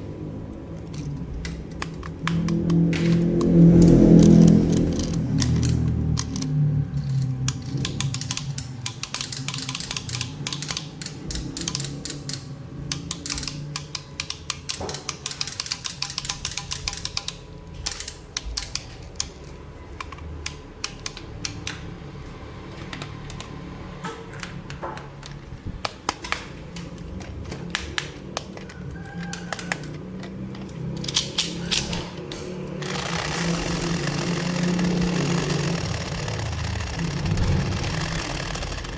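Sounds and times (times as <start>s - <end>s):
soft background music: 0.0s - 24.1s
plastic toy pieces clicking: 0.7s - 21.9s, 24.4s - 38.9s.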